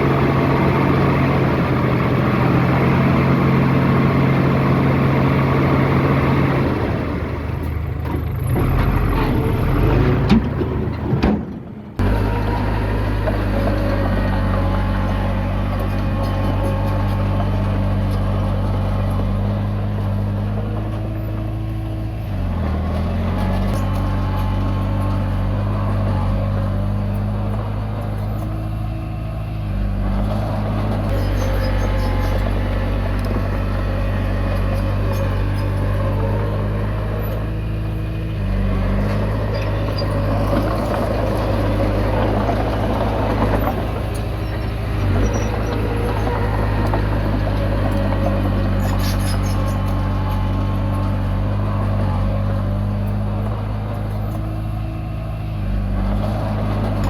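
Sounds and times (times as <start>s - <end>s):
bulldozer diesel engine running: 0.0s - 57.0s
rattle: 30.3s - 36.3s, 39.0s - 50.4s.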